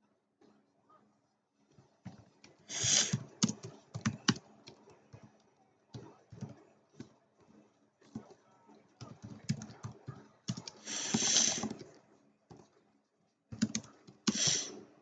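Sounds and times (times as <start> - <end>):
keyboard typing: 2.1 - 7.2, 8.0 - 12.8, 13.5 - 14.8.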